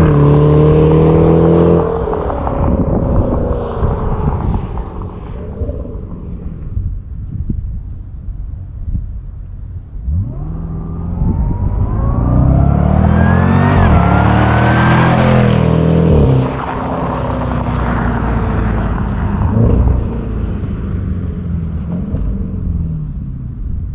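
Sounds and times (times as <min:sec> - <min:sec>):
car accelerating hard past: 0:10.1 - 0:20.9.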